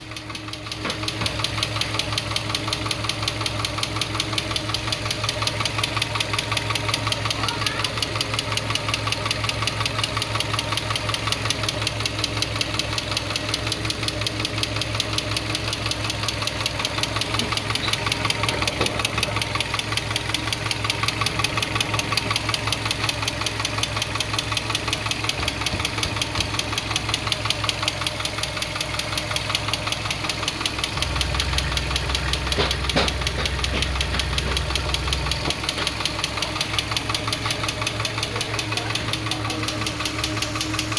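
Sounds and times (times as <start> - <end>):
car engine running: 0.0 - 40.9
fast even engine ticking: 0.0 - 40.9.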